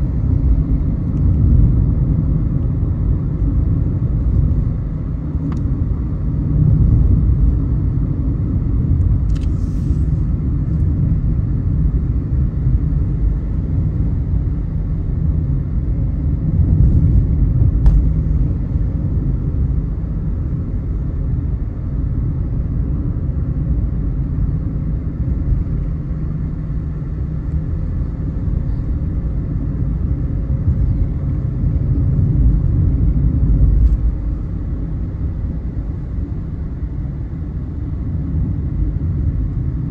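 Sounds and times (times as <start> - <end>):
car engine and tyre rumble: 0.0 - 39.9
brief hiss: 9.4 - 10.2.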